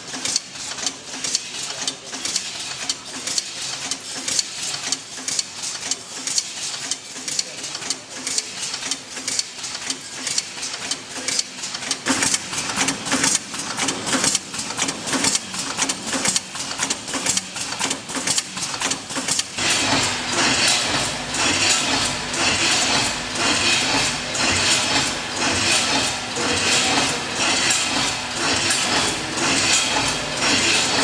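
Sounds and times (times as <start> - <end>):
packing machine clicking and knocking: 0.0 - 31.0
dense mechanical din: 13.1 - 31.0.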